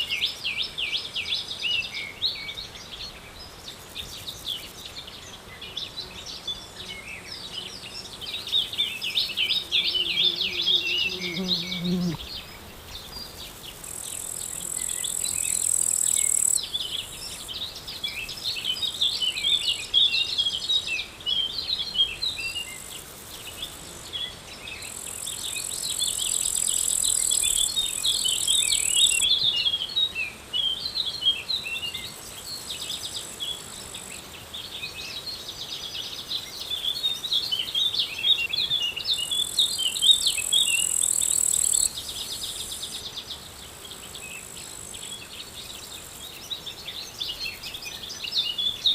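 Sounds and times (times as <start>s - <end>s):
insect buzzing: 3.6s - 20.7s, 21.5s - 48.9s
birds chirping: 8.4s - 13.6s.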